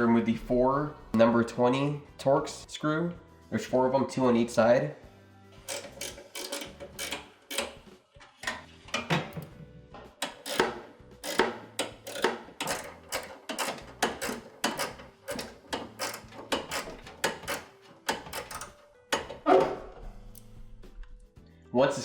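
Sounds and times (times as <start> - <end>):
screwdriver metallic clicking: 5.6 - 7.8, 10.1 - 19.6.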